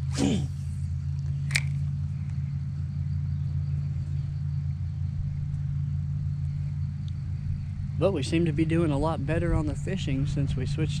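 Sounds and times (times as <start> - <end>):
motor humming: 0.0 - 11.0
sharp click: 1.4 - 1.8.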